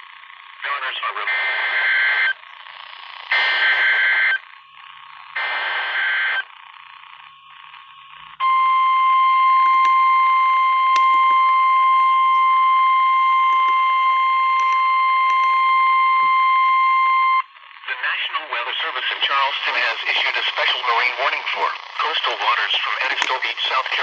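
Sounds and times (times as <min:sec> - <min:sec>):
radio static: 0:00.0 - 0:08.4, 0:09.6 - 0:24.0
digital data bursts: 0:18.7 - 0:24.0.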